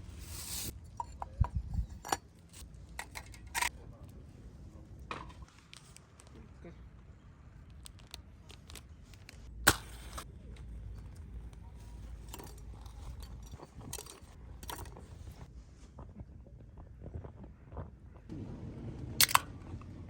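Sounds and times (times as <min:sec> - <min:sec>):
small objects clicking and knocking: 0:07.6 - 0:15.5.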